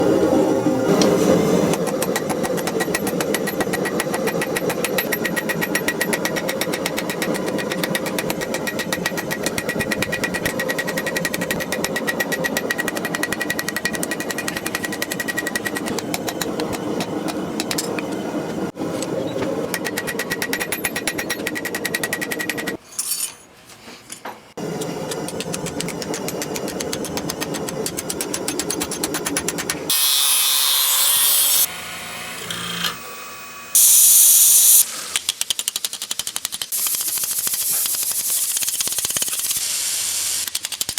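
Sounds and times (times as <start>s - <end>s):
hammering on hot steel: 1.7s - 18.1s, 24.6s - 30.0s
loud hiss: 33.8s - 35.2s, 36.8s - 40.5s.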